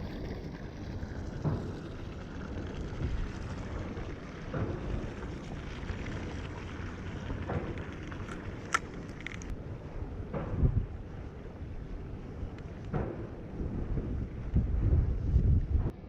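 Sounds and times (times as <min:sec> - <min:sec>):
wind buffeting microphone: 0:00.0 - 0:16.0
wind gusts: 0:00.0 - 0:16.0.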